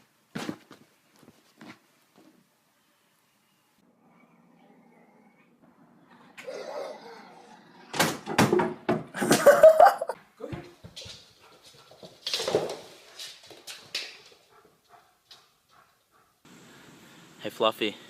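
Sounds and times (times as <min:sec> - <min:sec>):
dog barking: 0:14.5 - 0:16.4.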